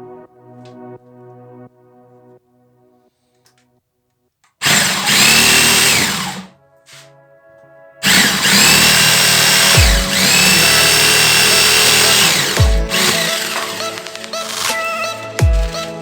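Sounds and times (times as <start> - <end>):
power drill whining: 4.6 - 7.1, 8.0 - 15.8
background music with deep bass: 4.7 - 16.0.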